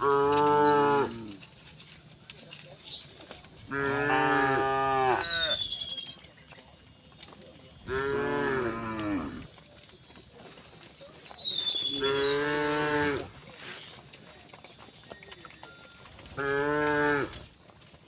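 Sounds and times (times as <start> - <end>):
cows mooing: 0.0 - 1.7, 3.6 - 5.6, 7.8 - 9.6, 11.8 - 14.0, 15.9 - 17.5
birds chirping faintly: 0.0 - 18.0.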